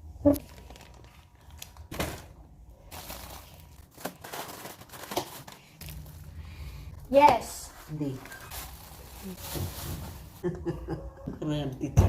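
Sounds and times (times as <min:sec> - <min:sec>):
plastic packaging crinkling: 0:00.4 - 0:06.4, 0:07.1 - 0:10.4.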